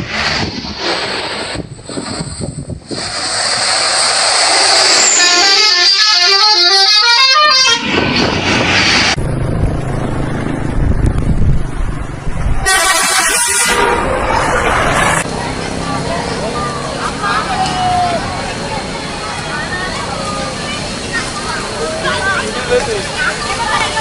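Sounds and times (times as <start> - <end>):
traffic road and engine noise: 0.0 - 24.0
bus musical horn: 5.0 - 8.4, 12.6 - 14.5.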